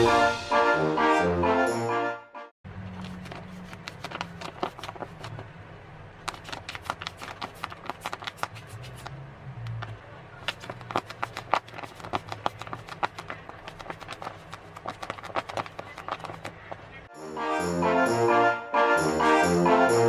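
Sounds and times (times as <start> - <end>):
paper rustling and crinkling: 2.8 - 5.5, 6.2 - 9.1, 10.4 - 16.8.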